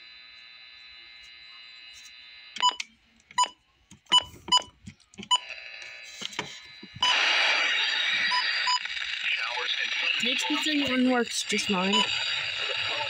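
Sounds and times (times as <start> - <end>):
loud radio static: 5.8 - 13.0.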